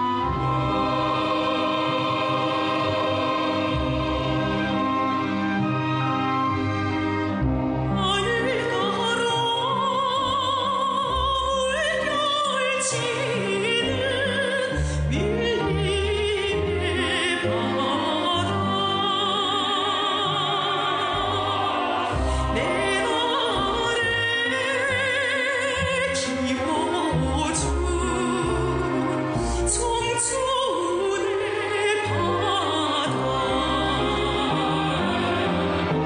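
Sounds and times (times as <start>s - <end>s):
instrumental accompaniment: 0.0s - 8.5s.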